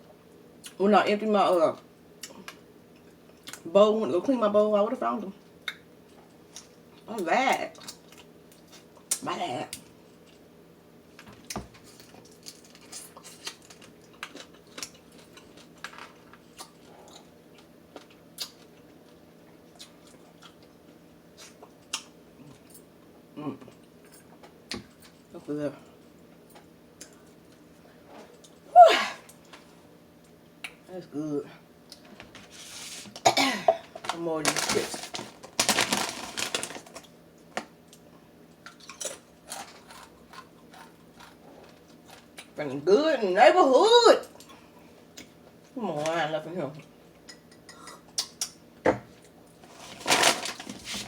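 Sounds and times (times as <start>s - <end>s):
person chewing food: 11.4s - 22.8s, 37.4s - 42.6s
chips crunching in mouth: 34.0s - 37.1s.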